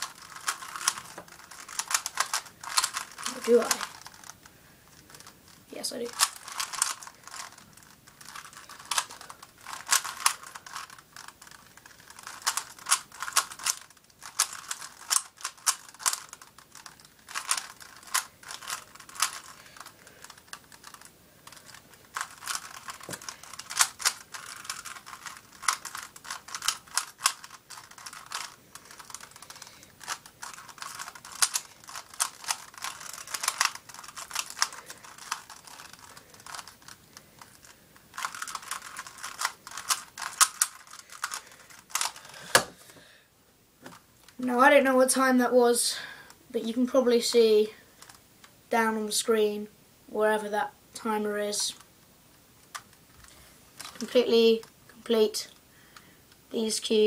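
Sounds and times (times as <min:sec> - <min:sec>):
puzzle cube clicking: 0:00.0 - 0:42.8.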